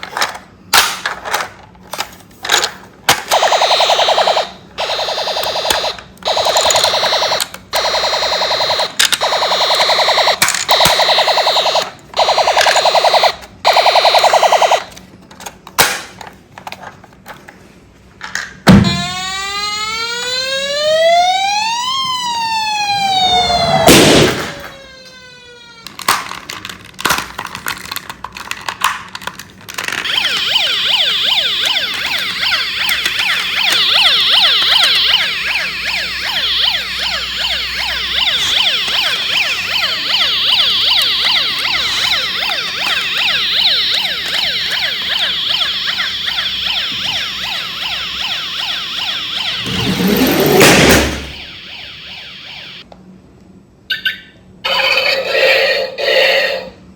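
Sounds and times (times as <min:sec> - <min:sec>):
fast warbling toy siren: 0:03.3 - 0:15.0, 0:18.8 - 0:25.9, 0:30.0 - 0:52.9
toy siren wailing: 0:03.3 - 0:15.0, 0:18.8 - 0:26.1, 0:30.0 - 0:52.8
loud bang: 0:49.6 - 0:51.6.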